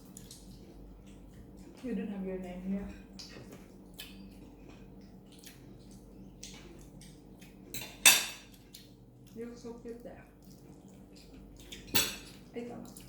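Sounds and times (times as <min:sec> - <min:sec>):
dishes and utensils handled: 0:07.7 - 0:08.5.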